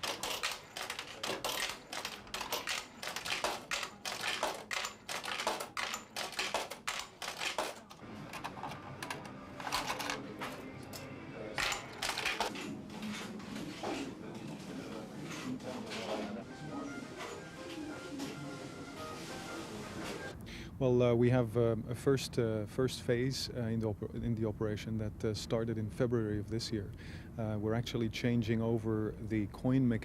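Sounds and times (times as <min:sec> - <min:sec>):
coins clinking into coin mechanism: 0:00.0 - 0:13.4.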